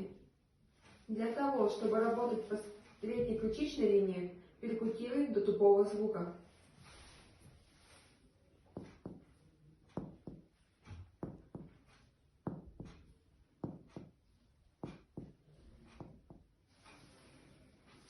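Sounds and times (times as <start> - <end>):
finger tapping on chest: 10.0 - 14.2.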